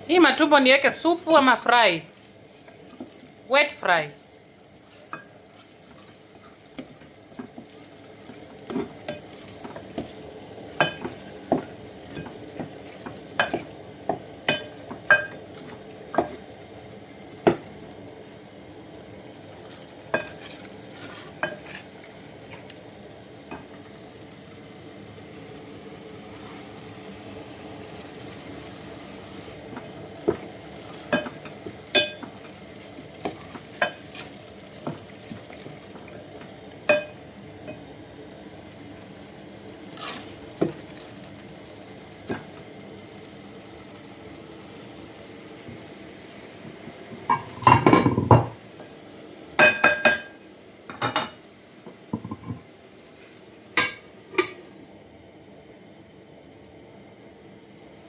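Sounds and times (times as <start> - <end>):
food sizzling in a pot: 0.0 - 58.0
spoon striking pot: 14.5 - 15.4, 31.1 - 32.3, 36.9 - 37.8, 52.2 - 52.6.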